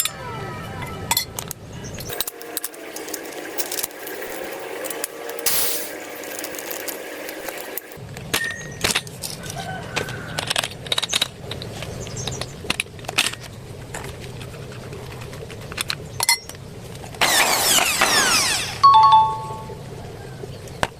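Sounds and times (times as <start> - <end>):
metal tool parts clinking: 2.0 - 8.0.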